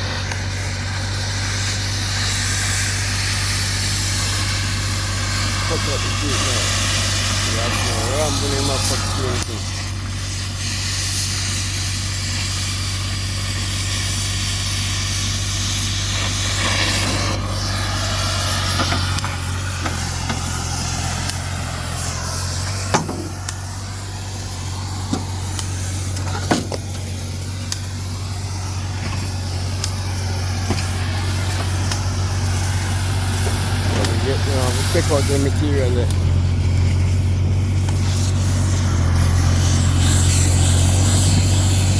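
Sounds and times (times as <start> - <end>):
heavy engine running: 0.0 - 41.9
sharp metal knocks: 22.9 - 23.3.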